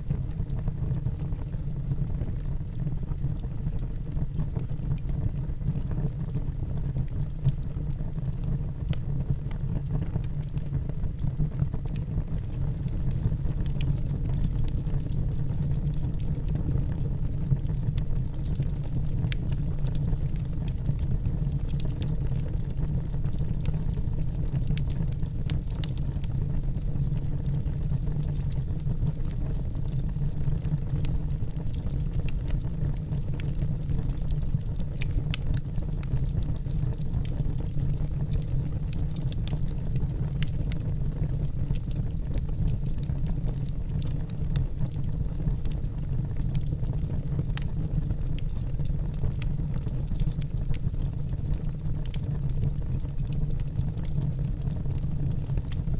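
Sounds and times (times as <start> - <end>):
campfire crackling: 6.6 - 7.9, 17.5 - 26.1, 26.8 - 55.8.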